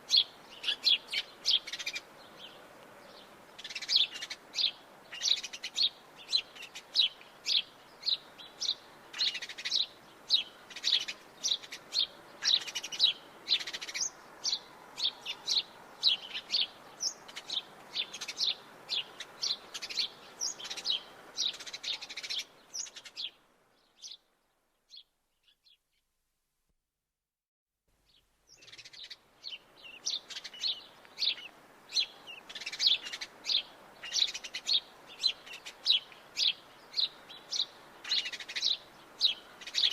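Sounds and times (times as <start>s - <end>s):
sparrows chirping: 0.0s - 25.9s, 28.1s - 39.9s.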